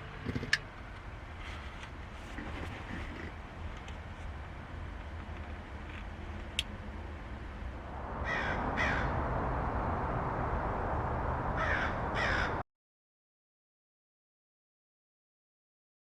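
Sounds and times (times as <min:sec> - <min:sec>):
rushing background noise: 0:00.0 - 0:12.6
crow cawing: 0:08.2 - 0:09.1, 0:11.6 - 0:12.6.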